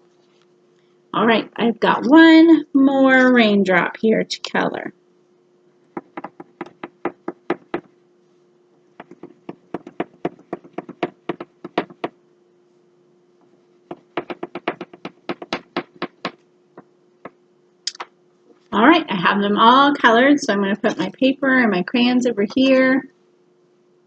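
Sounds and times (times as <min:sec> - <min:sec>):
crayon scratching on paper: 0:09.0 - 0:12.1, 0:13.9 - 0:16.4.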